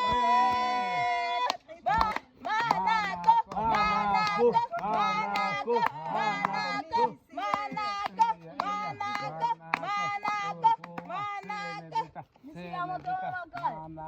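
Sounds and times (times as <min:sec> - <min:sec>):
voices singing: 0:00.0 - 0:14.0
sharp claps or clicks: 0:01.4 - 0:06.8, 0:07.4 - 0:11.6.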